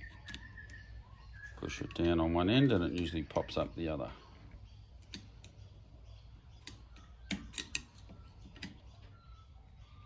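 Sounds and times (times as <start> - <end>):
metal-on-metal clicks: 6.6 - 9.1.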